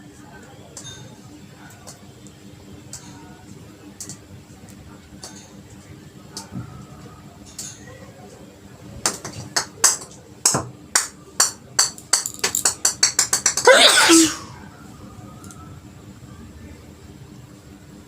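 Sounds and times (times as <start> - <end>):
woman sneezing: 13.7 - 14.6.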